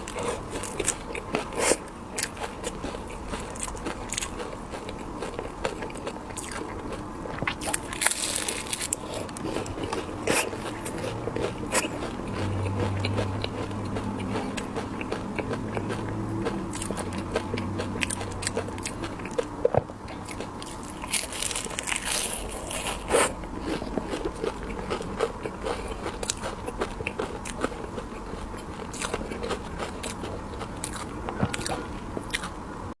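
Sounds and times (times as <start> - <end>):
crunchy candy chewing: 0.0 - 32.6.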